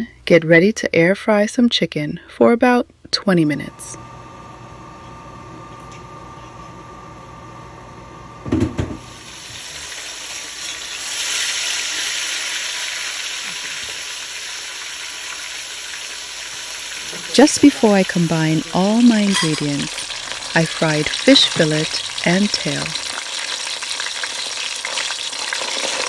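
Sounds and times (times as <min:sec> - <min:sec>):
fish sizzling in hot oil: 0:09.1 - 0:26.0.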